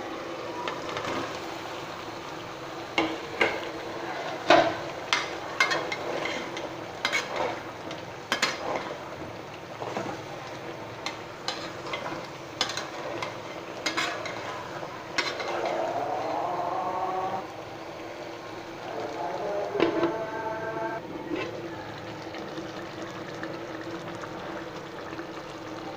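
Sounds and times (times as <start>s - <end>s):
food sizzling in a pan: 0.0s - 25.9s
spatula scraping a pan: 4.4s - 7.7s, 8.3s - 9.0s, 11.0s - 16.0s.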